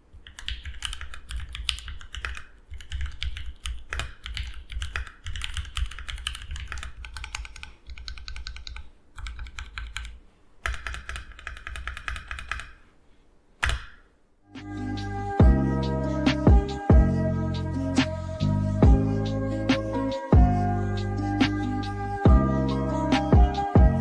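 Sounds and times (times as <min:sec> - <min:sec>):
mechanical keyboard typing: 0:00.1 - 0:12.8, 0:13.6 - 0:14.1.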